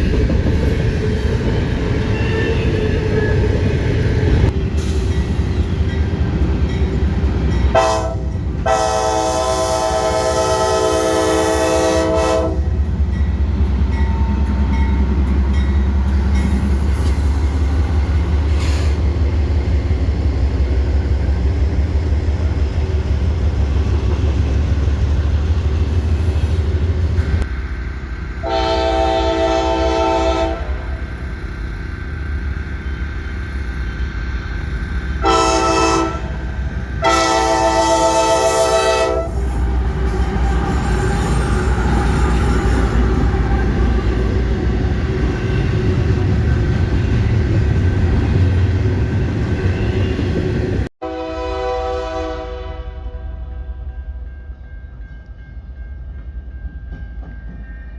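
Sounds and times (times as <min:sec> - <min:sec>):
diesel locomotive engine rumbling: 0:00.0 - 0:57.9
train horn blasts: 0:07.7 - 0:12.8, 0:28.4 - 0:31.0, 0:35.2 - 0:39.6, 0:51.0 - 0:53.9.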